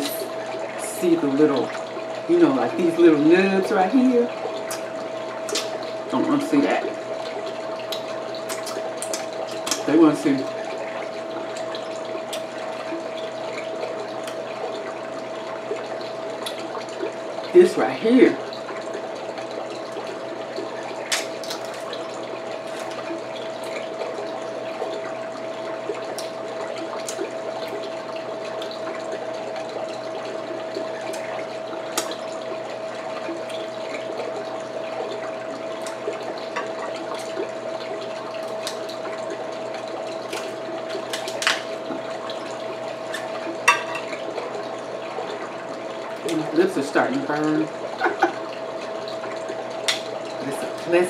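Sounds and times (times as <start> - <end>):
steady hum: 0.0 - 51.0
crab shell cracking: 21.1 - 21.9, 40.3 - 41.7, 49.9 - 50.1.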